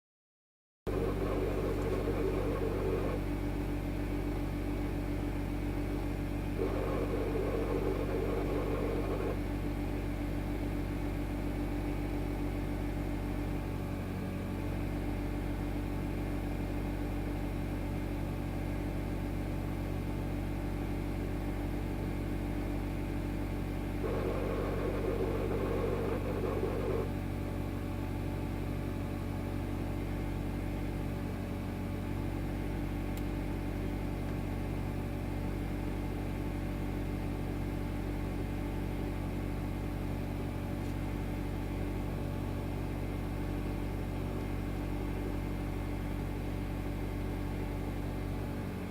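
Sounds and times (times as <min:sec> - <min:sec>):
harsh abnormal engine noise: 0:00.9 - 0:03.6, 0:06.4 - 0:10.0, 0:23.6 - 0:28.1
car engine idling: 0:00.9 - 0:13.8, 0:23.3 - 0:31.0.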